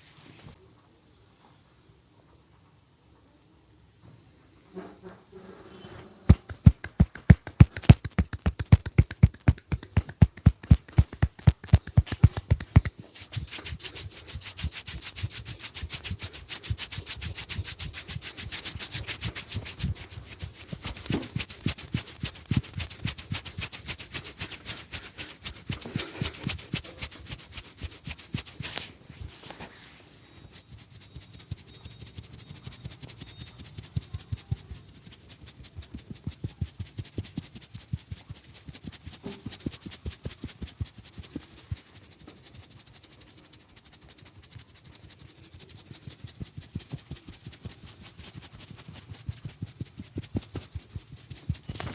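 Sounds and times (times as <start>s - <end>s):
hands rubbing skin and hair: 0.0s - 0.6s, 5.4s - 51.9s
hands slapping body: 6.3s - 16.2s, 17.8s - 28.9s.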